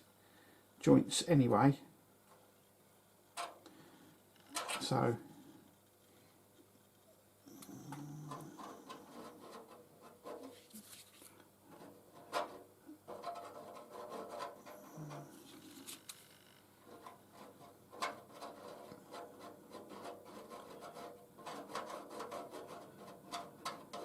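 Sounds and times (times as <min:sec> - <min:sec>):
rubbing and scraping on metal: 0:07.5 - 0:24.0.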